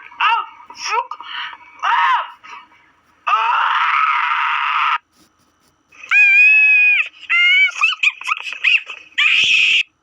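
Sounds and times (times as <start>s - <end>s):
high-pitched screaming cries: 3.2s - 5.0s, 6.0s - 10.0s.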